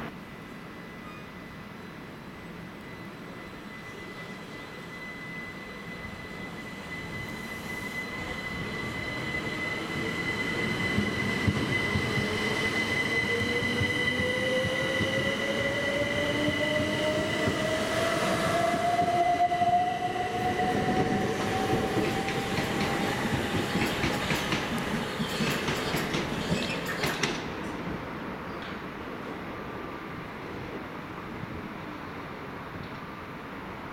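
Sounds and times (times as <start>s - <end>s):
electric train accelerating: 2.5s - 27.6s
steady high tone: 2.7s - 24.0s.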